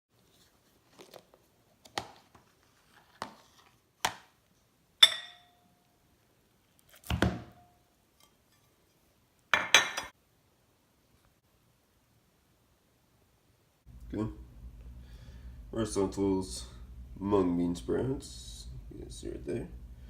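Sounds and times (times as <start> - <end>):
dishes and utensils clinking: 5.0 - 5.7, 9.6 - 10.2.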